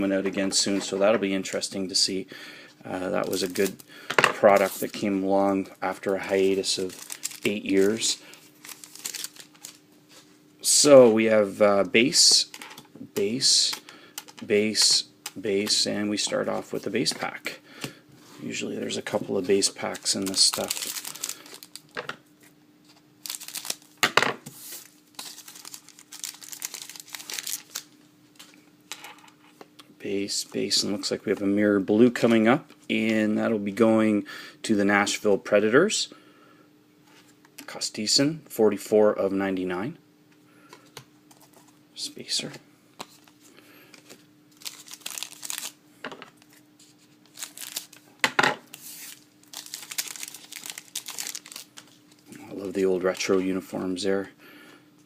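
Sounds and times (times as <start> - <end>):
foil wrapper crinkling and tearing: 6.0 - 9.8, 19.6 - 22.0, 23.2 - 28.0, 44.0 - 45.8, 47.2 - 48.1, 48.7 - 53.4.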